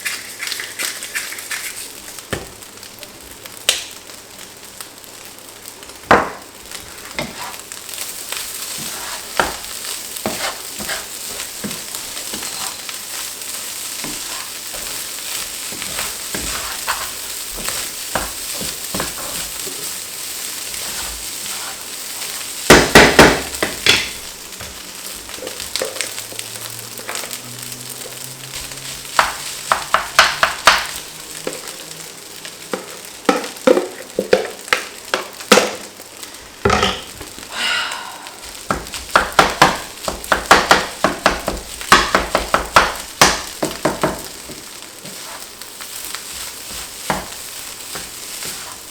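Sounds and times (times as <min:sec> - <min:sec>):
rice sizzling in a hot pan: 0:00.0 - 0:48.9
utensil scraping and knocking pan: 0:08.8 - 0:12.8.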